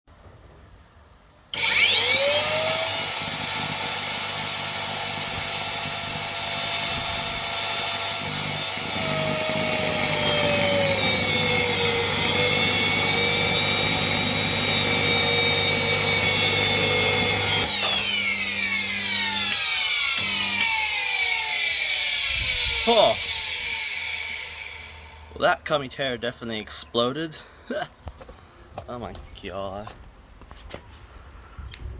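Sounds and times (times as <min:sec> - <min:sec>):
vacuum cleaner motor whine: 0:01.6 - 0:25.3.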